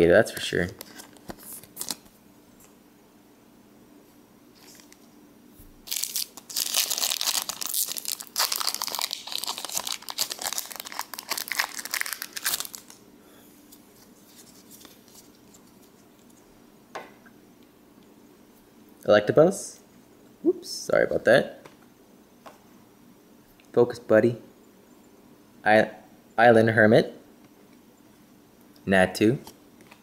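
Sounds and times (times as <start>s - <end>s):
foil wrapper tearing and crinkling: 0.8s - 2.1s, 5.8s - 13.0s.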